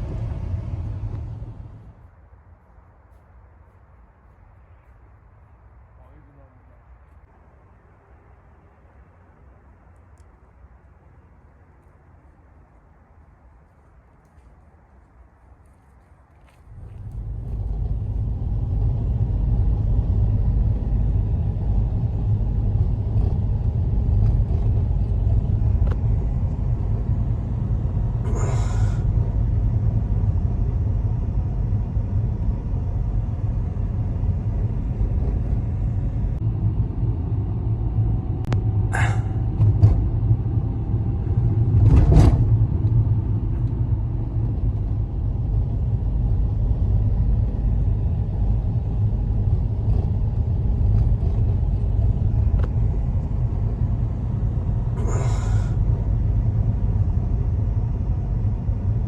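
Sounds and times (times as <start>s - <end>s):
wind buffeting microphone: 16.5s - 59.0s.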